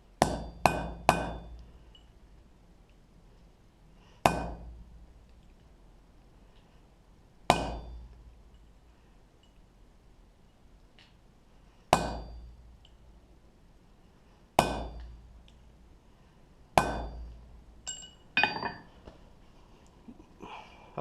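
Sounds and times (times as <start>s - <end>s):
hammer striking steel punch: 0.2s - 1.5s, 4.2s - 4.7s, 7.5s - 8.0s, 11.9s - 12.4s, 14.6s - 15.1s, 16.8s - 17.3s.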